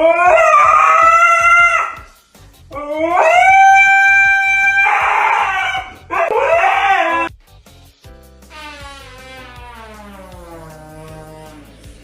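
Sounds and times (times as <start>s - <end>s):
dog howling: 0.0s - 2.0s, 2.8s - 7.3s.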